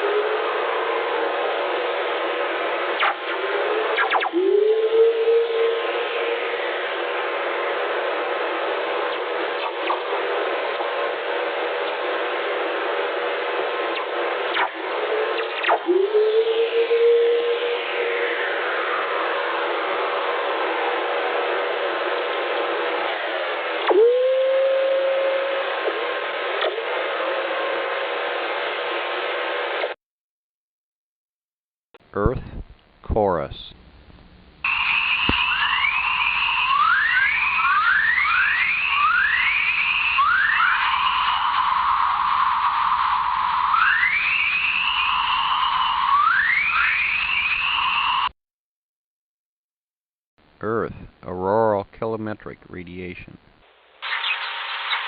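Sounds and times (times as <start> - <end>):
steady radio hiss: 0.0 - 23.8, 24.6 - 29.9, 32.0 - 48.3, 50.6 - 55.0
faint descending whistle: 4.0 - 6.0, 15.7 - 18.2, 34.7 - 48.3
sharp crackles: 54.0 - 55.0.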